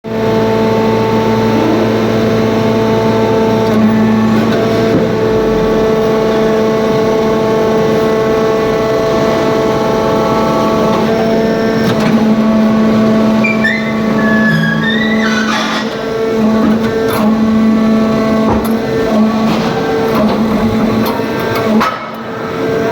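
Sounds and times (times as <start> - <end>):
hydraulic baler hum-whine: 0.1 - 22.9
high squeal: 13.3 - 16.5.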